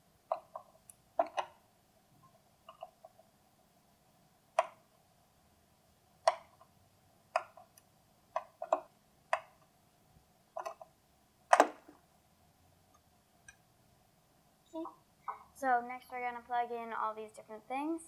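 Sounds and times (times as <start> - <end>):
sharp clicks and knocks: 0.3 - 1.6, 7.3 - 9.7, 10.6 - 10.9, 11.5 - 12.0.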